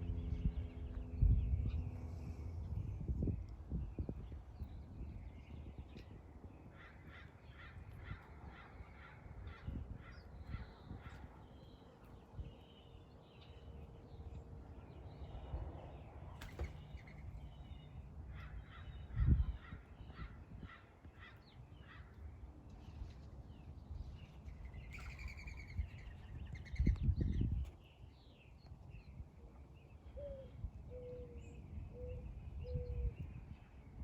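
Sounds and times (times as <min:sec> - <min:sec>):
low background rumble: 0:00.0 - 0:05.5.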